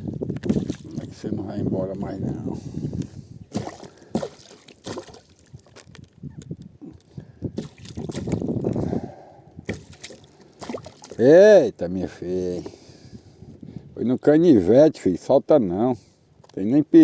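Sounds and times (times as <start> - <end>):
water sloshing and splashing: 0.0 - 2.0, 3.5 - 6.1, 7.6 - 8.9, 9.6 - 11.4.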